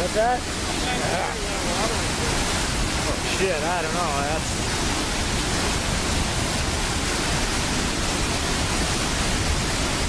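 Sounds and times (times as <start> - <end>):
rushing falling water: 0.0 - 10.0.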